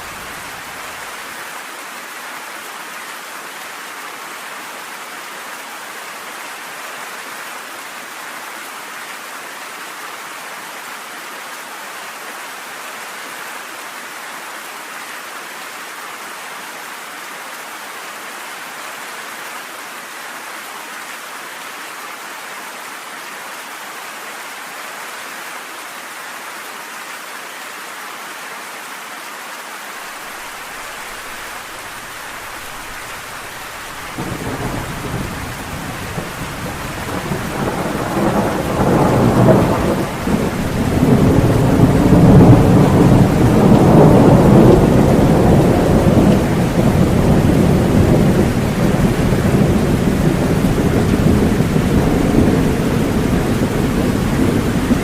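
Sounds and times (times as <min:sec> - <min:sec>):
steady rain: 0:00.0 - 0:55.0
thunder rumbling: 0:32.6 - 0:55.0.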